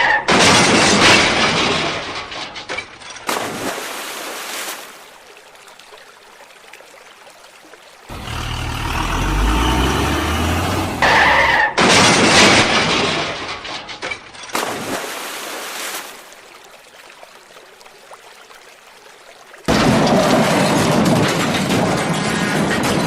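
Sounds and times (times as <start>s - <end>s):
truck engine running: 8.1s - 11.6s
high squeal: 10.4s - 11.8s.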